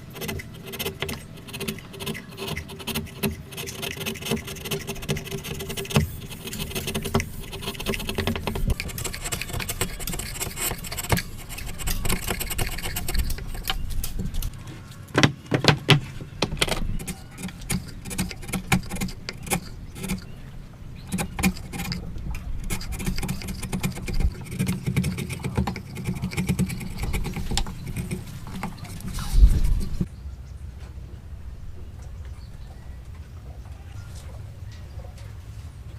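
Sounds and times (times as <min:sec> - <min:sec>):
wood scraping: 0:00.0 - 0:20.4, 0:21.0 - 0:30.1.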